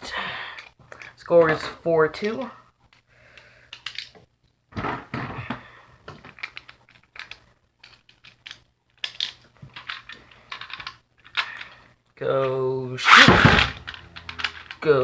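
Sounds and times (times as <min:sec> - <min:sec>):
hard plastic parts clicking: 0:02.2 - 0:11.8, 0:12.4 - 0:15.0
plastic clatter: 0:13.2 - 0:15.0.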